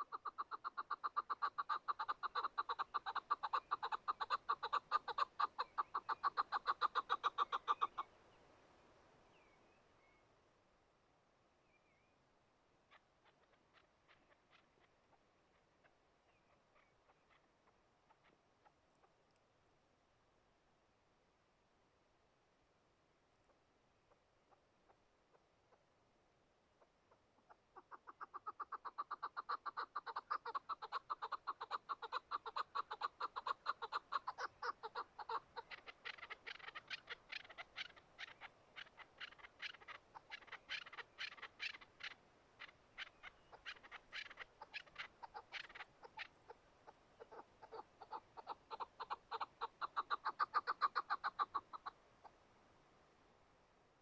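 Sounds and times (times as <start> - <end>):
partridge clucking call: 0.0 - 8.1, 12.9 - 19.1, 27.1 - 52.0.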